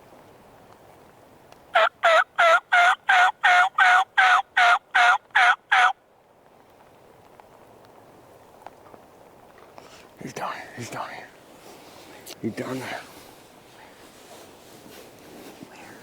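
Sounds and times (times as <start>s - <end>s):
turkey yelps: 1.8s - 6.0s.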